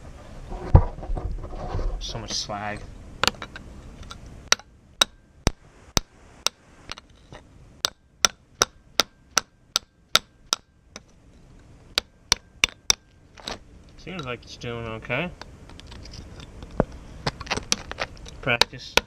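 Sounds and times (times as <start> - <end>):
faint metallic ringing: 2.0 - 17.2
hammer striking metal: 4.5 - 5.6, 7.8 - 10.7.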